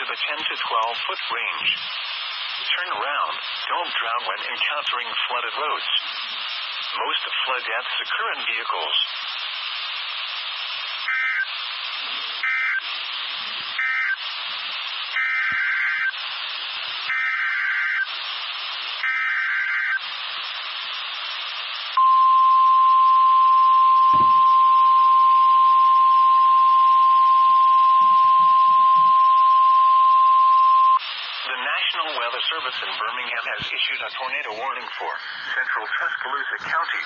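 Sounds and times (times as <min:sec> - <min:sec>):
radio static: 0:00.0 - 0:37.0
steady alarm beep: 0:22.0 - 0:31.0.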